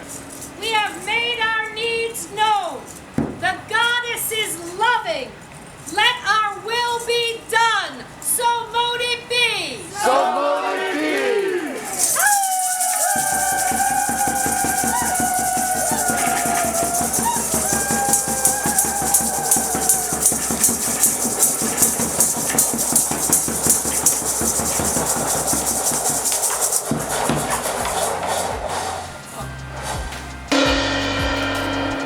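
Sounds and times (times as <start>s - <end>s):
fast high rattling percussion: 11.7s - 32.0s
steady beat: 11.8s - 32.0s.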